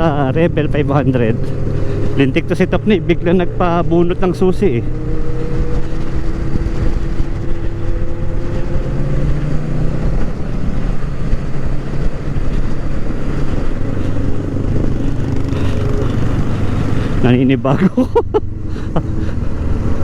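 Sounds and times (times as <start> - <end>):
wind noise on microphone: 4.9 - 17.3
motorcycle engine running: 9.9 - 17.6.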